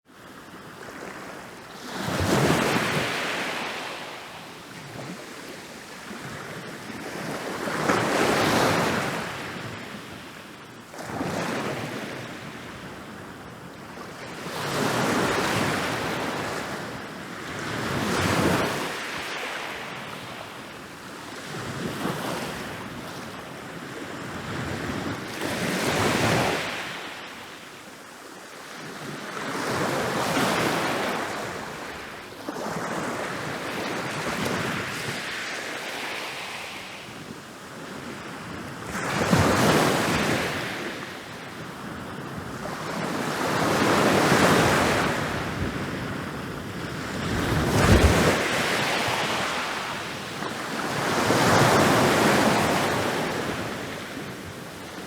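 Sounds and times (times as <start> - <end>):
waves crashing on beach: 29.2 - 55.0.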